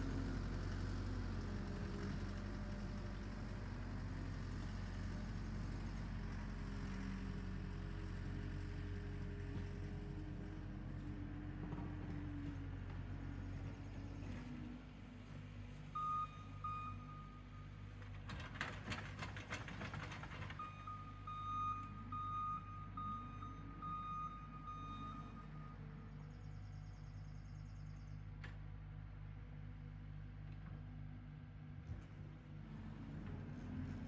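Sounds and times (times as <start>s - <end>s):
reversing alarm beeping: 16.0s - 17.6s, 20.6s - 25.8s.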